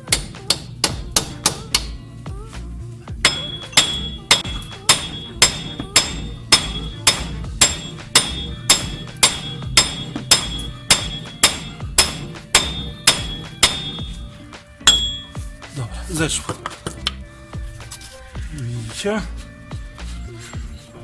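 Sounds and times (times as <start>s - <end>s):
hammer striking metal hub: 0.0s - 2.0s, 3.2s - 15.5s.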